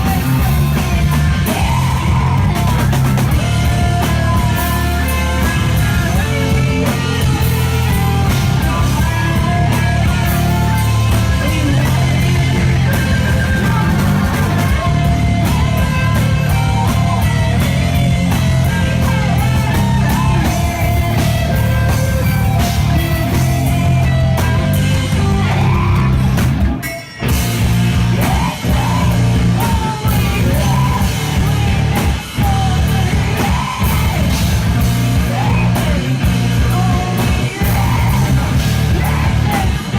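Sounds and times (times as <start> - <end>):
shouted vocals: 0.0 - 26.4
bass: 0.0 - 39.9
distorted electric guitar: 0.0 - 39.9
drums: 0.0 - 39.9.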